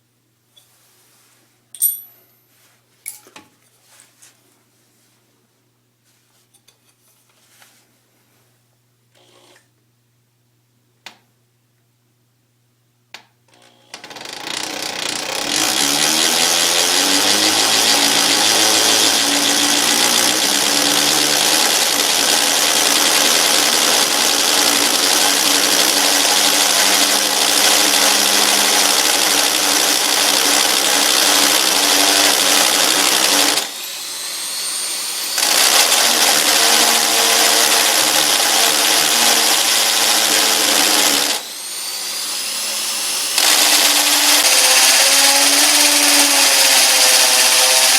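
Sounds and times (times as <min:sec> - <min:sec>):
hammer drill boring into concrete: 0:13.6 - 0:47.9.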